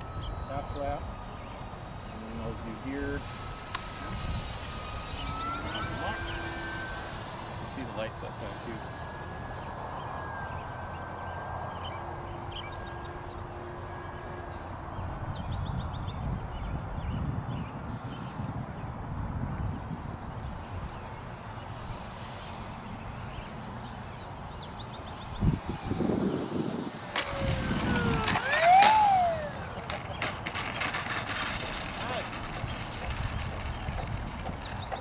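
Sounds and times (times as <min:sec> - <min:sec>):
birds chirping: 0:00.0 - 0:19.9, 0:20.6 - 0:35.0
faint electric motor whine: 0:00.0 - 0:35.0
wind rumble on microphone: 0:14.6 - 0:22.0, 0:25.2 - 0:35.0.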